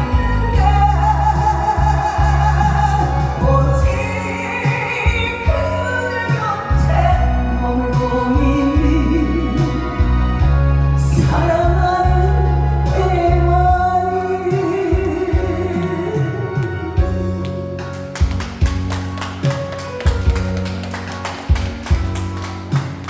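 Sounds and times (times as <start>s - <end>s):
woman singing with vibrato: 0.0s - 17.1s
instrumental backing track: 0.0s - 23.0s.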